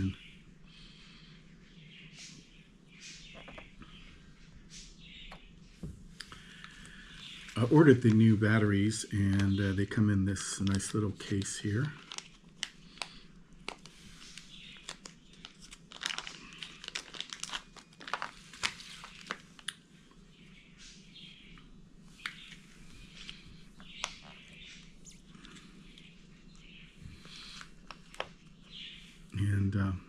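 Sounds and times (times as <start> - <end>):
plastic packaging crinkling: 6.5 - 9.5, 10.4 - 19.8.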